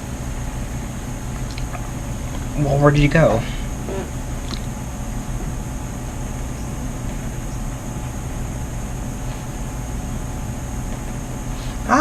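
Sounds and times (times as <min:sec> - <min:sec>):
steady hum and hiss: 0:00.0 - 0:12.0.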